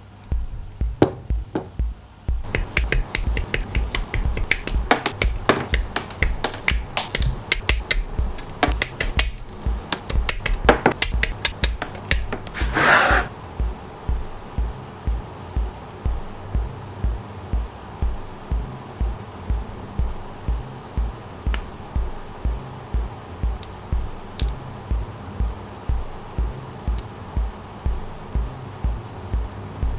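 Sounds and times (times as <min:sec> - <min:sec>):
background music with steady beat: 0:00.0 - 0:29.9
rubbing scrape: 0:12.5 - 0:13.3.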